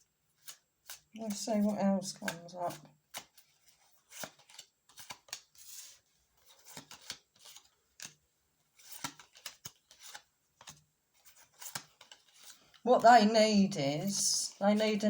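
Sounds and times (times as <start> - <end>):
cards being shuffled: 0.4 - 13.3, 13.9 - 15.0.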